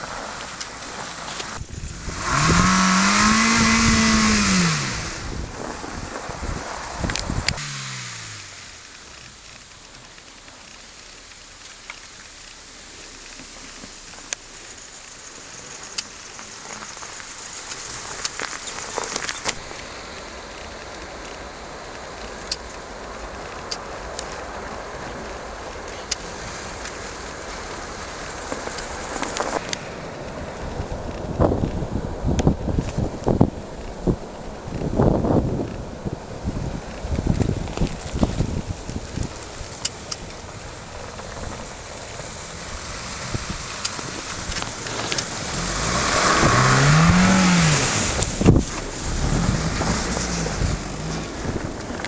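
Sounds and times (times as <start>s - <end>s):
car engine revving: 0.0s - 10.9s, 40.9s - 52.0s
crackling of snow: 0.0s - 52.0s
tyre and road noise: 0.0s - 52.0s.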